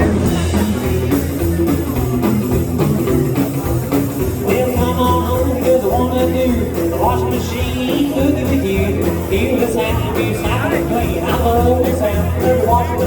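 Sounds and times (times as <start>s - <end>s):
country boogie band playing live: 0.0s - 13.0s.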